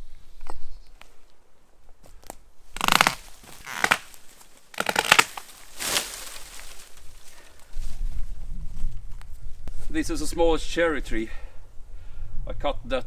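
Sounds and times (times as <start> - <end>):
branches crackling and snapping: 2.2 - 8.2.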